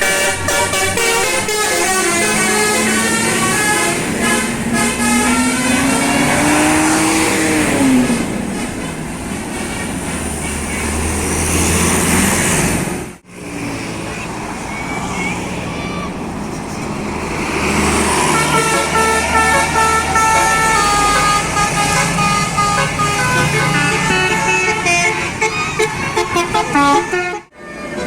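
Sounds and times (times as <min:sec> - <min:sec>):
multi-tone musical bus horn: 0:00.0 - 0:08.2, 0:18.2 - 0:28.0
heavy vehicle engine: 0:00.0 - 0:28.0
road noise: 0:00.0 - 0:28.0.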